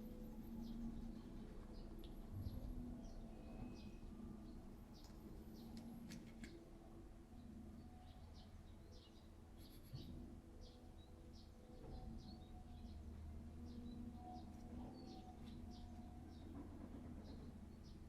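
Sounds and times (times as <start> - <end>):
small birds chirping: 7.8 - 16.6.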